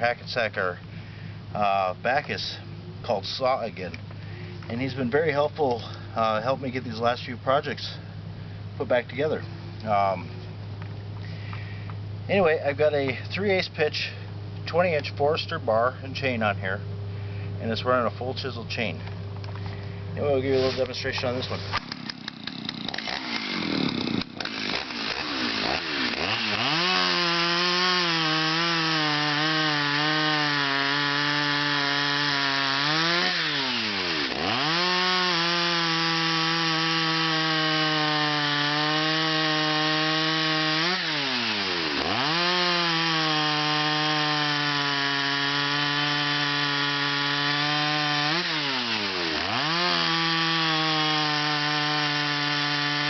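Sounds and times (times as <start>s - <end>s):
chainsaw cutting wood: 18.8s - 53.0s.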